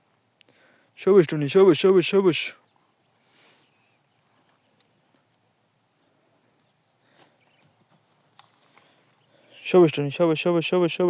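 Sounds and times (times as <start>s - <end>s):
soft rustles: 7.1s - 9.6s.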